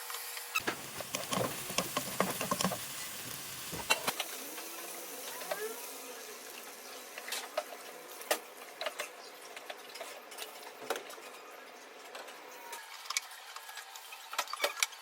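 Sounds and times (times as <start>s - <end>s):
food sizzling in a pan: 0.0s - 10.0s
utensil tapping a pan: 0.7s - 2.9s.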